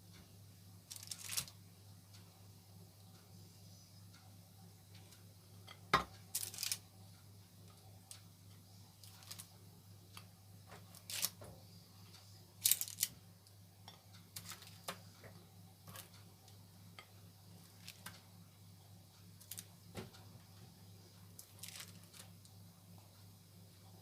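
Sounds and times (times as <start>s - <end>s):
steady low hum: 0.0s - 24.0s
kitchen clicks and taps: 5.7s - 6.3s.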